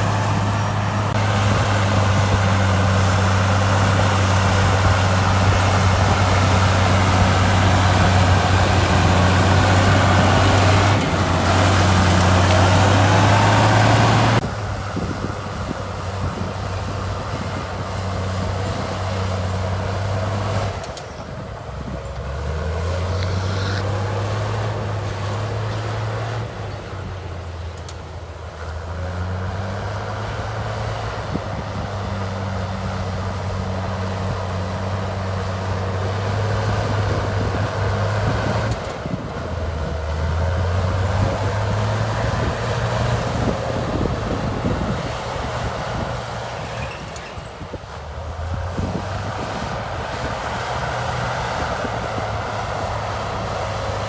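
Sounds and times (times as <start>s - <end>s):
heavy diesel engine running: 0.0s - 54.0s.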